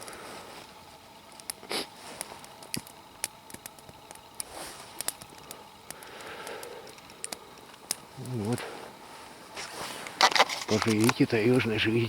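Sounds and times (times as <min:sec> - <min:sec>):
campfire crackling: 0:00.0 - 0:12.0
sharp pops: 0:01.3 - 0:08.4
short rustle: 0:08.6 - 0:11.0.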